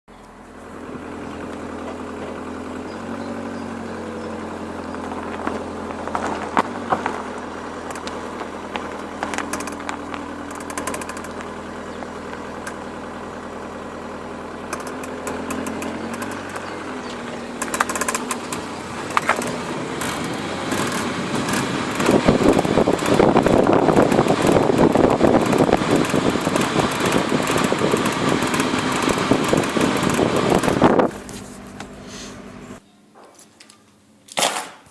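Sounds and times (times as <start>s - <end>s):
engine idling: 0.1s - 32.8s
sharp ticks: 9.3s - 11.5s, 14.7s - 16.6s, 17.6s - 30.8s.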